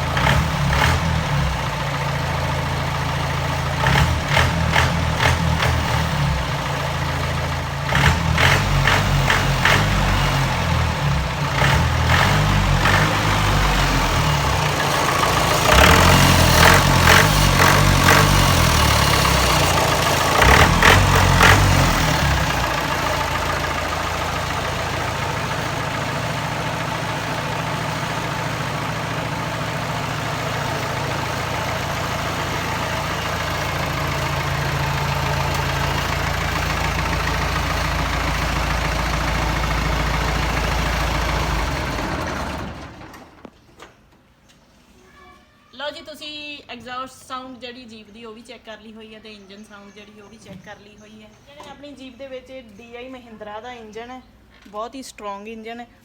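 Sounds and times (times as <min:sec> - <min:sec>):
diesel engine revving and idling: 0:00.0 - 0:43.5.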